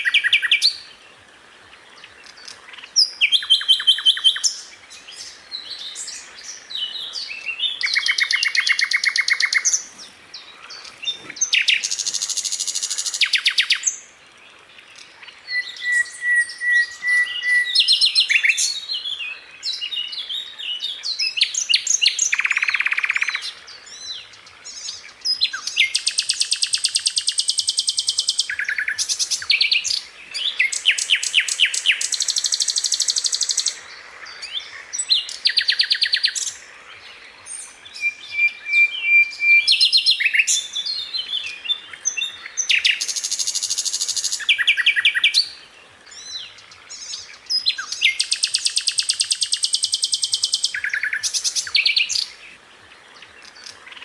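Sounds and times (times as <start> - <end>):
bird steady whistle: 15.5 - 18.6, 48.0 - 52.1
bird singing rattling trills: 46.1 - 52.4.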